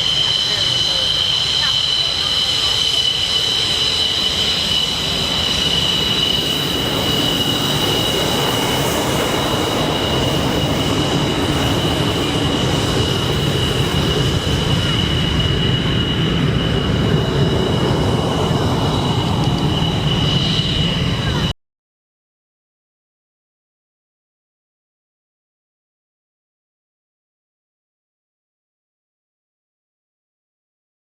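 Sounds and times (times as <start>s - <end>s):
jet engine roar: 0.0s - 21.6s
jet engine whine: 0.0s - 21.6s.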